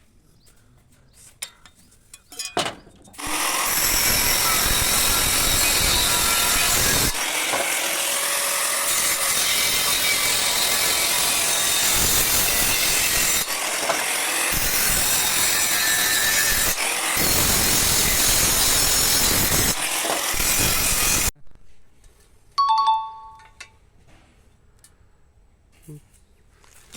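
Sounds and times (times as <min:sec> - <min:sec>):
grinding or welding steel: 0:03.2 - 0:21.4.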